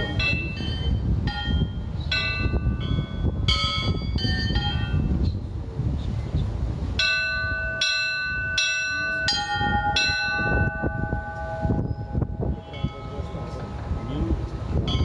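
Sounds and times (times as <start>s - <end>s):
church bells pealing: 7.0s - 15.0s.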